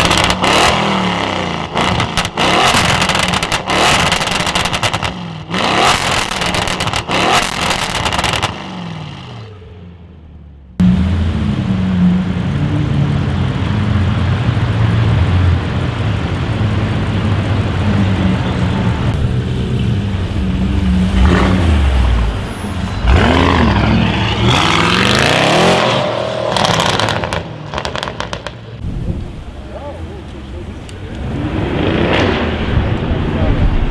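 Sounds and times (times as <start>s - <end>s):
exhaust cracks: 0.0s - 9.3s, 23.0s - 29.4s
car engine revving: 0.0s - 10.0s, 10.7s - 28.8s, 30.1s - 33.9s.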